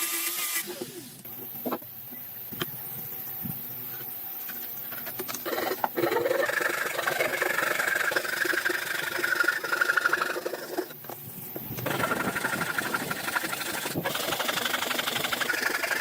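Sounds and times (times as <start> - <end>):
power tool whining on wood: 0.0 - 1.8, 5.2 - 16.0.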